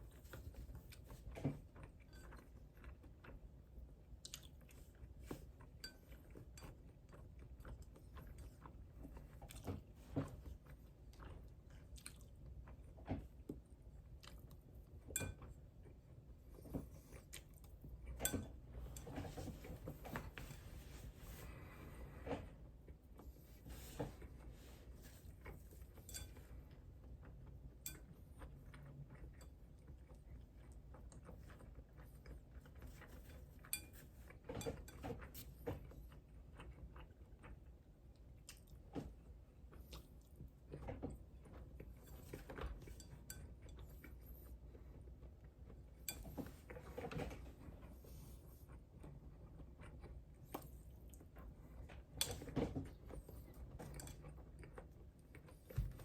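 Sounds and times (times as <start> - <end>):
person chewing: 0.0 - 9.8, 10.5 - 13.0
low steady hum: 0.0 - 56.0.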